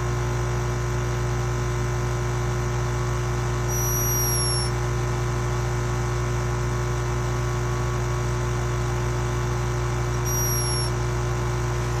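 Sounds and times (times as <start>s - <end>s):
steady low hum: 2.4s - 7.7s, 8.9s - 12.0s
hummingbird high squeak: 3.7s - 4.8s, 10.2s - 11.0s.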